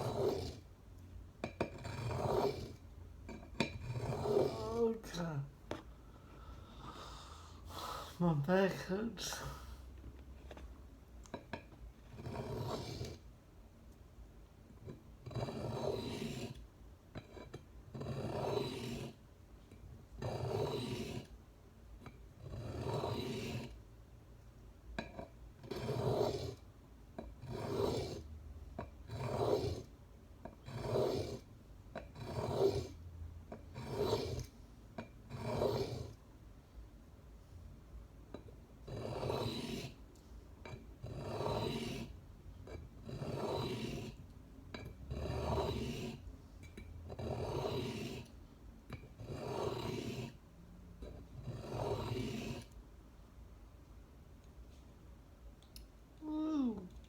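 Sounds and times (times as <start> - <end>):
knife rasping on sharpening stone: 0.0 - 0.6, 1.4 - 4.9, 11.3 - 13.2, 14.8 - 16.6, 17.2 - 19.2, 20.2 - 21.3, 22.4 - 23.8, 25.0 - 26.6, 27.2 - 28.2, 28.8 - 31.4, 32.0 - 36.2, 38.3 - 40.0, 40.6 - 48.3, 48.9 - 50.4, 51.0 - 52.8.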